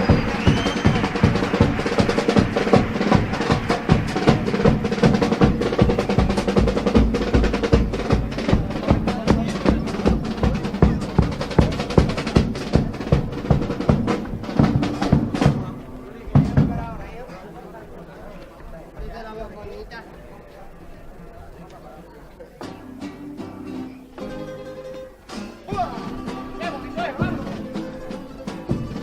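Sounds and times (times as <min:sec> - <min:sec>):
bass drum and snare drum beating: 0:00.0 - 0:17.0.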